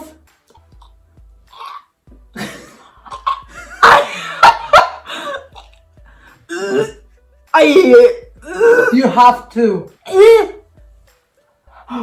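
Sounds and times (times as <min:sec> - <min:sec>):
person coughing: 0:02.4 - 0:05.7, 0:06.5 - 0:07.0.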